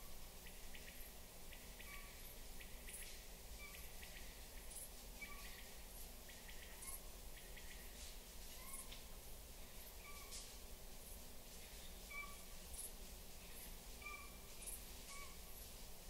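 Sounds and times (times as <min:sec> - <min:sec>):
light ticks: 0:08.0 - 0:09.1.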